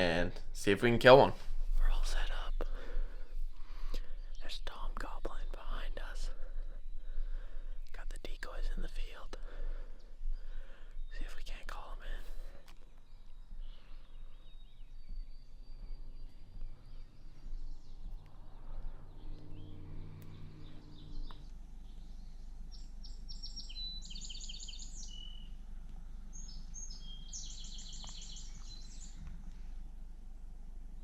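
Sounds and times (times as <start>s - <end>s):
outdoor background: 0.0s - 31.0s
songbird singing: 0.0s - 31.0s
brief low hum: 12.3s - 31.0s.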